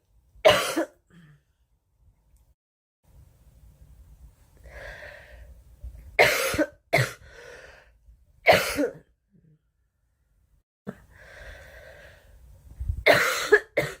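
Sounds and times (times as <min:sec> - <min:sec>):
girl coughing: 0:00.5 - 0:01.0, 0:06.2 - 0:07.2, 0:08.5 - 0:09.1, 0:13.1 - 0:14.0.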